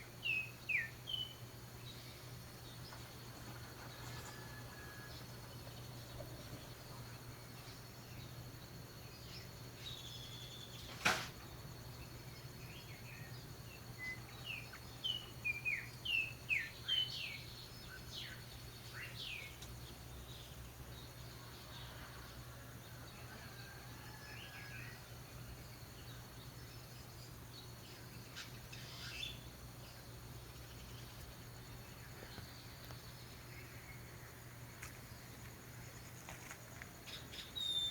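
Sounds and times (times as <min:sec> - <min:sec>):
orioles whistling calls: 0:00.0 - 0:08.4, 0:24.4 - 0:34.6, 0:37.0 - 0:37.9.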